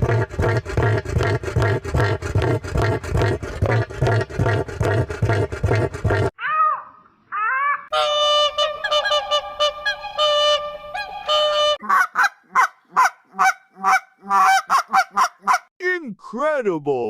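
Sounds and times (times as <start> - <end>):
geese honking: 7.9 - 15.6.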